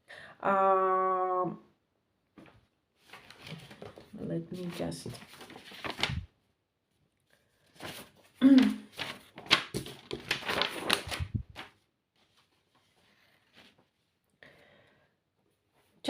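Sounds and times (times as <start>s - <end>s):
book pages rustling: 2.4s - 6.4s, 7.3s - 14.2s.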